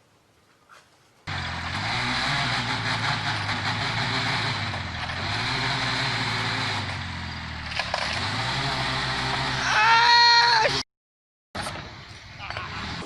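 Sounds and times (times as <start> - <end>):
engine running steadily: 1.3 - 9.9.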